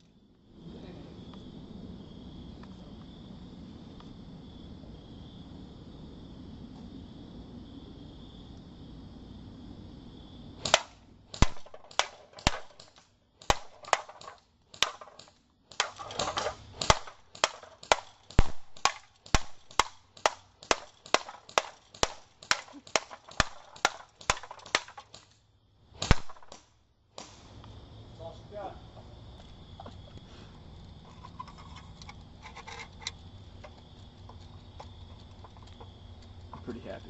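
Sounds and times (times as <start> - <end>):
airsoft gun shots snapping: 10.6 - 25.4, 26.0 - 27.5.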